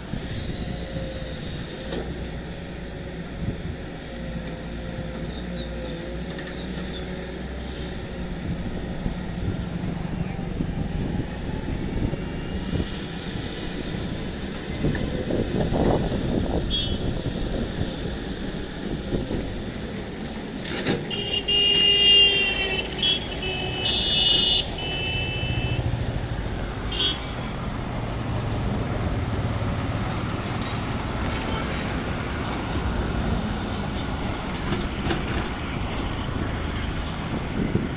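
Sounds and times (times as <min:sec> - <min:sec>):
horn tooting: 0:21.1 - 0:26.0, 0:26.9 - 0:27.5.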